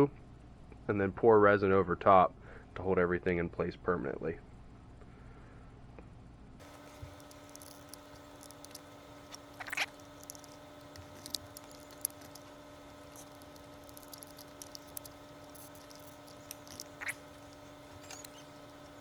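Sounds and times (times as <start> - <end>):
low electrical hum: 0.0 - 19.0
faint handling clicks: 6.6 - 19.0.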